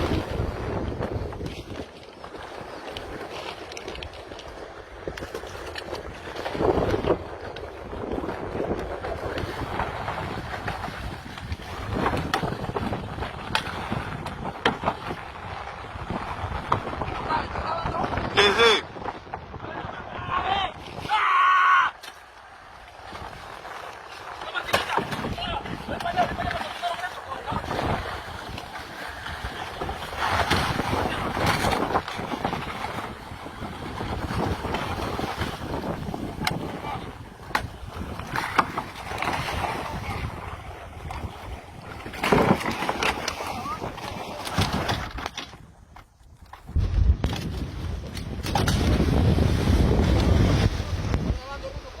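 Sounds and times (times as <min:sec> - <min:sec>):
sea water sloshing around boat: 0:00.0 - 0:17.0, 0:22.0 - 0:46.8
wind buffeting microphone: 0:00.0 - 0:21.3, 0:21.9 - 0:52.0.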